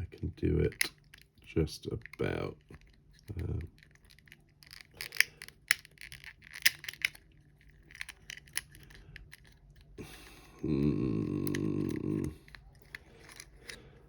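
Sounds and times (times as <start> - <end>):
low voiced murmur: 10.5 - 12.4.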